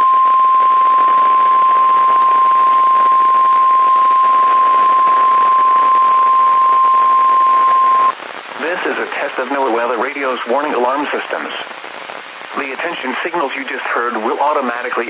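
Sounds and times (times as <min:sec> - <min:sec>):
loud steady alarm beep: 0:00.0 - 0:08.1
radio static hiss: 0:00.0 - 0:15.0.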